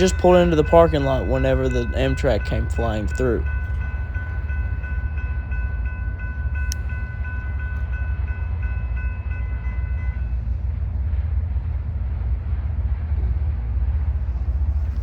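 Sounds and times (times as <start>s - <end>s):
steady low rumble: 0.0s - 5.0s, 10.6s - 15.0s
railroad crossing bell ringing: 0.0s - 10.5s.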